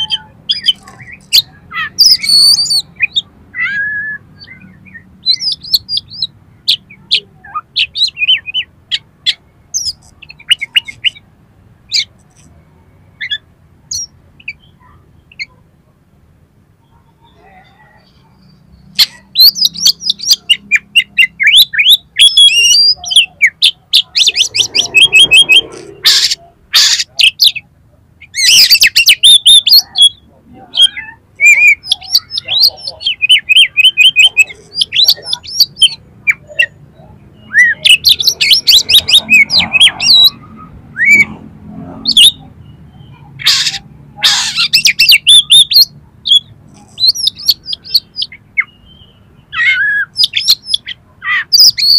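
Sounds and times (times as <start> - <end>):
songbird whistling: 0.0 - 6.3, 19.0 - 27.6, 28.4 - 30.2, 43.0 - 51.9
harsh bird calls: 0.0 - 15.6, 16.7 - 51.9.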